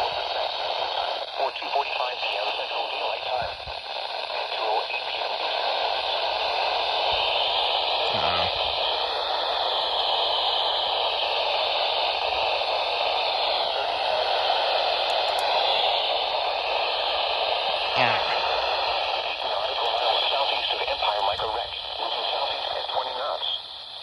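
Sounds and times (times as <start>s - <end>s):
faint radio voice: 0.0s - 5.6s, 8.0s - 8.7s, 17.8s - 23.6s
radio static hiss: 0.0s - 24.0s.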